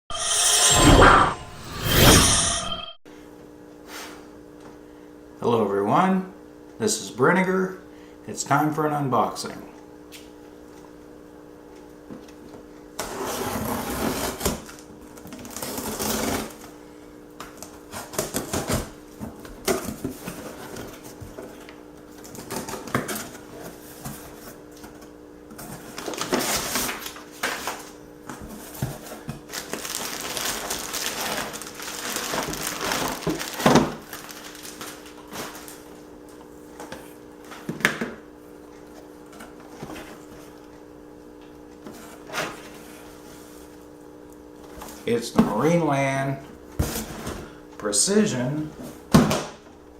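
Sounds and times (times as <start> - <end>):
package rustling and tearing: 29.5 - 35.7.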